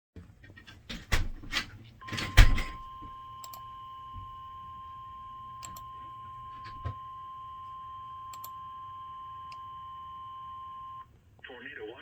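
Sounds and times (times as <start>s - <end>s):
steady warning alarm tone: 2.0s - 11.1s.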